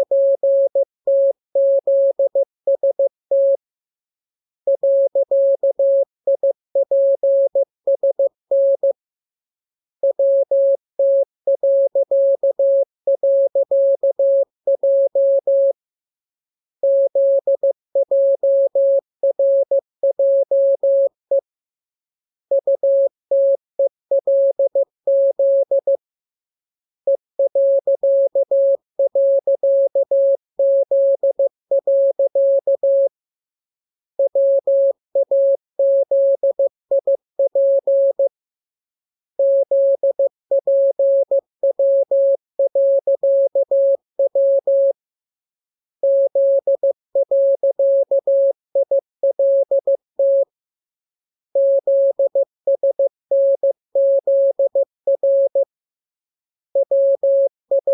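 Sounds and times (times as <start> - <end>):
morse code tone: 56.8 - 57.9.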